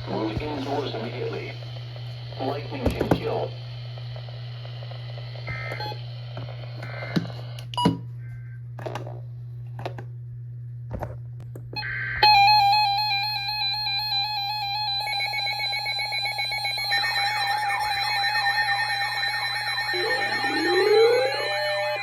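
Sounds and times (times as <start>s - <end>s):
low steady hum: 0.0s - 22.0s
two-tone attention signal: 12.2s - 22.0s
short data burst: 13.8s - 22.0s.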